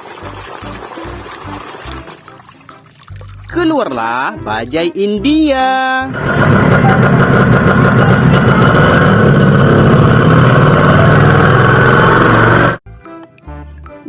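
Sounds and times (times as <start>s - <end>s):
auto-rickshaw engine chugging: 6.1s - 12.8s.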